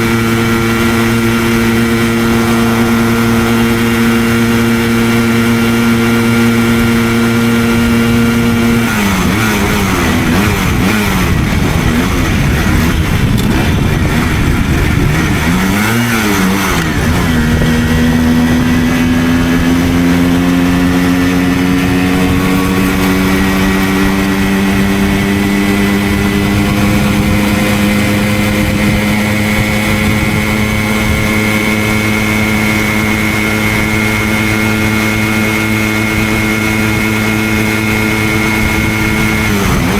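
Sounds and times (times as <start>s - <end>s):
moped two-stroke engine revving: 0.0s - 39.9s.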